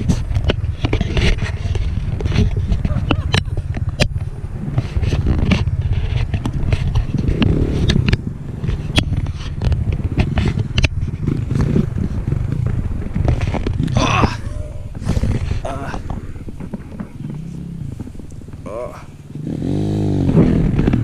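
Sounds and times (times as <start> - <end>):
sharp clicks and knocks: 0.0 - 18.7, 20.0 - 21.0
motorcycle engine at low revs: 0.0 - 21.0.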